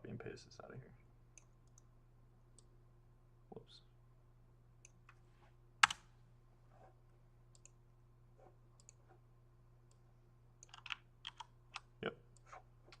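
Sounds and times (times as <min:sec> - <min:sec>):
faint low hum: 0:00.0 - 0:13.0
computer mouse clicks: 0:01.4 - 0:01.9, 0:07.5 - 0:07.8, 0:08.8 - 0:09.0.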